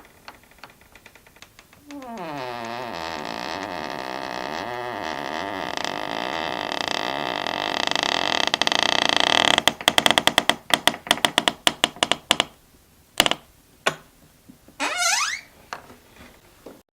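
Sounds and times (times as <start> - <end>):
door hinge creaking: 0.2 - 10.4, 14.8 - 15.5.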